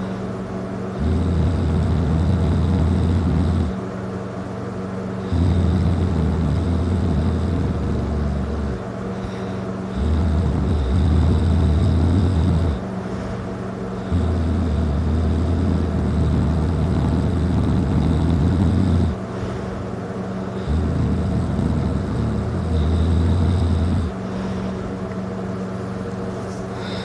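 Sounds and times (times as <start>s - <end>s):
man snoring loudly: 1.0s - 3.8s, 5.2s - 12.9s, 14.0s - 19.6s, 20.5s - 24.3s
soft breathing: 5.2s - 27.0s.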